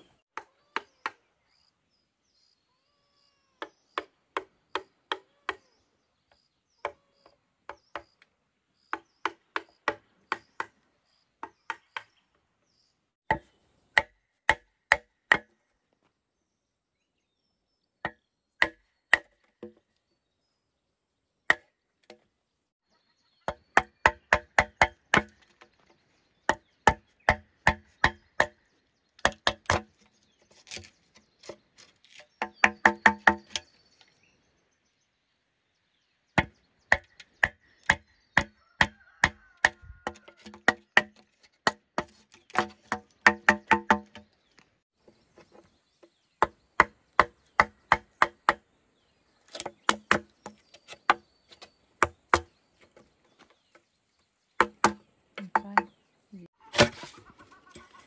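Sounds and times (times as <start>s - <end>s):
blade chopping bamboo: 23.5s - 25.4s, 26.5s - 33.7s, 36.4s - 44.3s, 49.4s - 52.5s, 54.6s - 55.9s, 56.7s - 57.2s.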